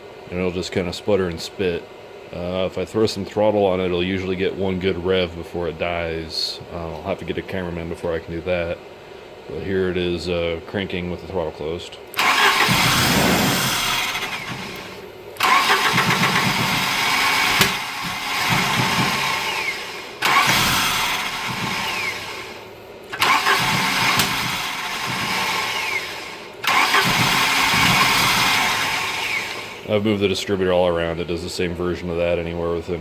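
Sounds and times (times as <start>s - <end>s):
car engine cranking and sputtering: 12.1s - 29.9s.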